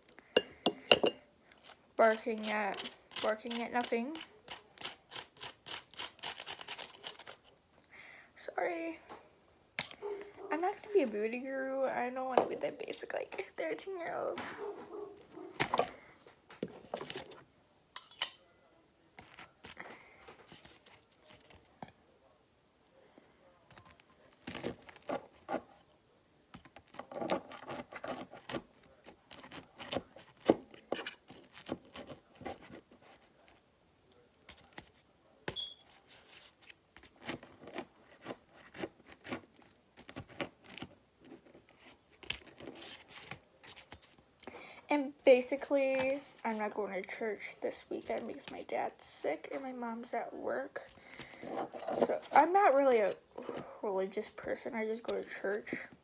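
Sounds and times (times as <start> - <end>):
cutlery clinking on a plate: 0.4 - 1.2, 18.0 - 18.4, 30.8 - 31.3.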